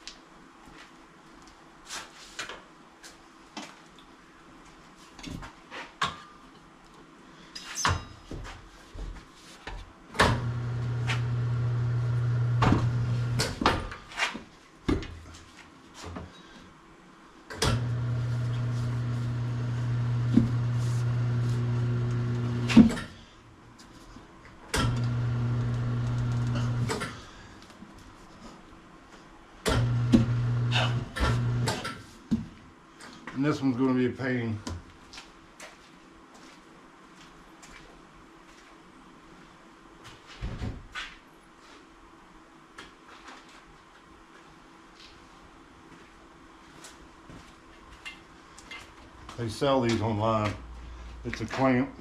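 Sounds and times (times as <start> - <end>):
electric motor turning wheel: 17.7 - 22.8, 24.9 - 27.0, 29.8 - 31.7.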